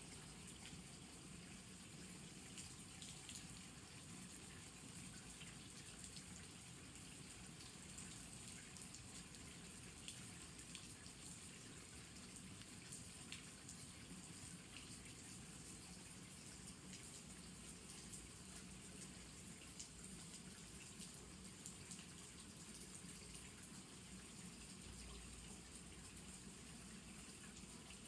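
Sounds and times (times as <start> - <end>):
faint steady rain: 0.0 - 28.0.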